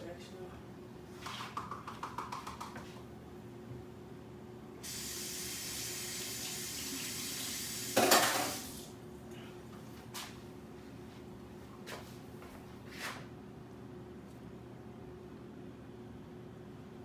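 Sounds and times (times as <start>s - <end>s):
kitchen faucet running: 4.8s - 8.9s.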